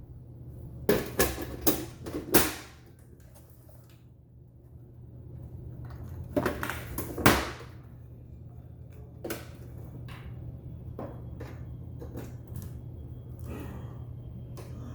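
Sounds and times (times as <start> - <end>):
steady low hum: 0.0 - 14.9.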